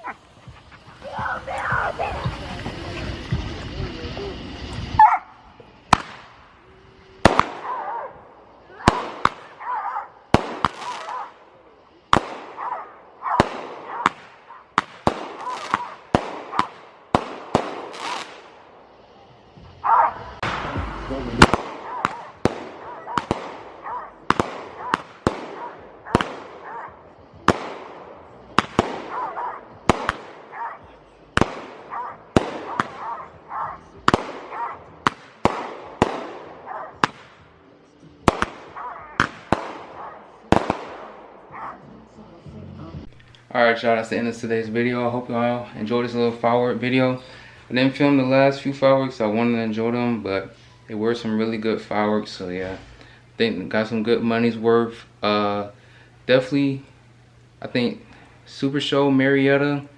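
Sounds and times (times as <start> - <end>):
firework bangs with echo: 5.7 - 6.5, 7.2 - 11.4, 12.1 - 18.8, 20.0 - 37.6, 38.2 - 41.8.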